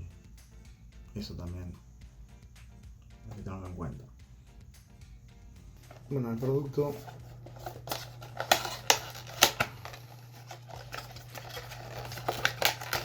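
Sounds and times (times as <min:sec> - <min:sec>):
packaging rustling: 0:05.8 - 0:13.0.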